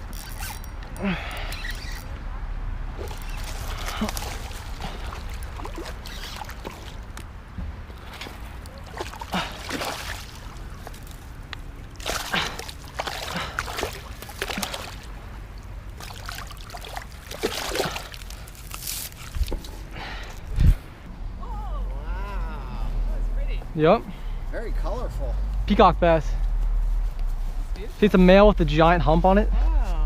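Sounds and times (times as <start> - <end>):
water splashing and sloshing: 0.0 - 21.2
fish thrashing in water: 3.0 - 7.2, 7.9 - 19.7
steady low rumble: 6.8 - 30.0.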